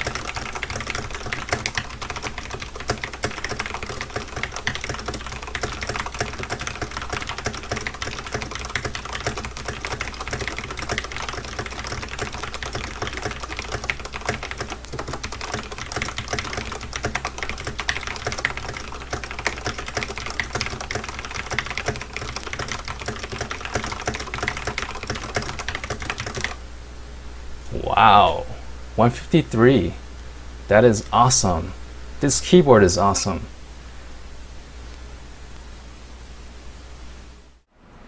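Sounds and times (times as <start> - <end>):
fast mechanical keyboard typing: 0.0 - 26.6.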